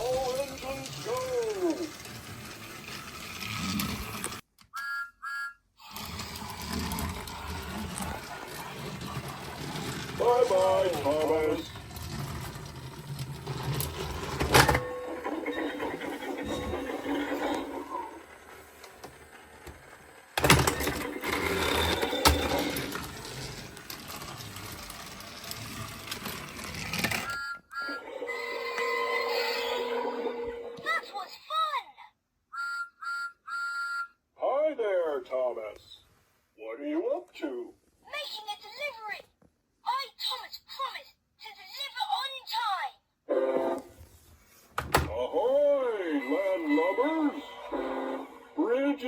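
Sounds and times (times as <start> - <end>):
toy motor gear whir: 0.0 - 4.4, 5.8 - 29.9
electronic whistle-like toots: 4.7 - 5.7, 27.4 - 29.6, 32.6 - 34.1.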